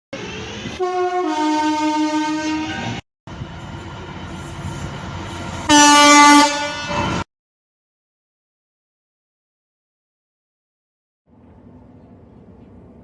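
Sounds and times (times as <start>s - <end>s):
train running noise: 0.1s - 7.2s, 11.3s - 13.0s
two-tone train horn: 0.8s - 3.0s, 5.6s - 7.2s.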